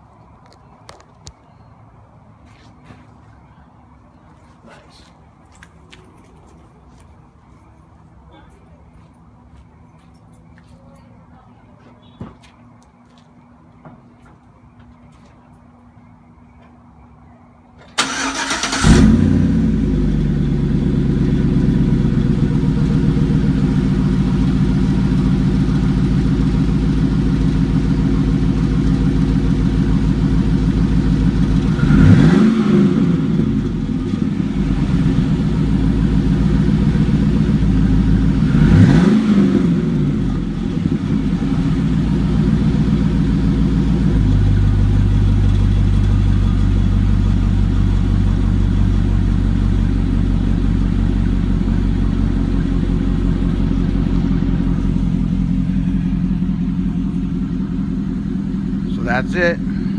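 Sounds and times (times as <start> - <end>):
pickup engine starting: 17.8 - 59.9
engine idling through exhaust: 18.0 - 59.9
engine revving: 18.0 - 59.9.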